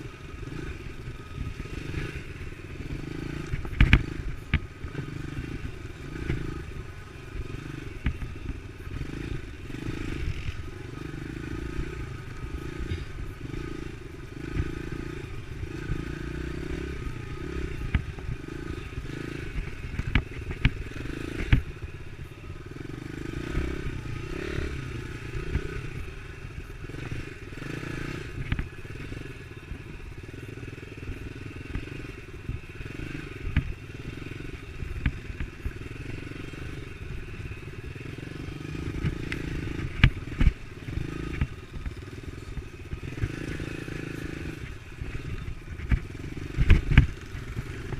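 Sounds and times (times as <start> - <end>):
dirt bike engine running: 0.0 - 47.9.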